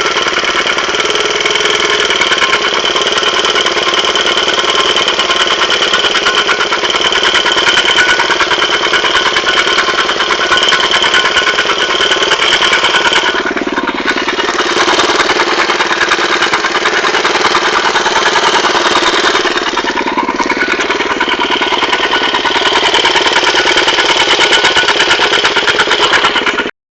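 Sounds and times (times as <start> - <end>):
motorcycle engine running: 0.0 - 26.8.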